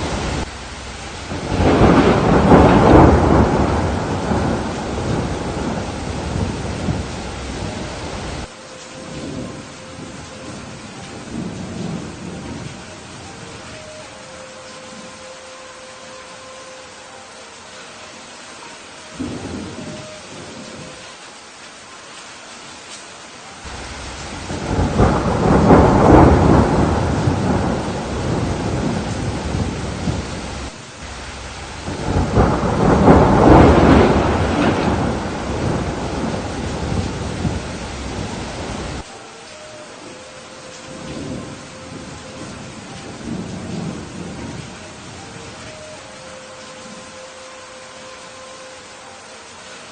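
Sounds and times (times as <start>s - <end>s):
thunder rolling: 0.0s - 13.7s, 23.7s - 39.0s, 40.8s - 45.7s
steady rain: 0.0s - 49.9s.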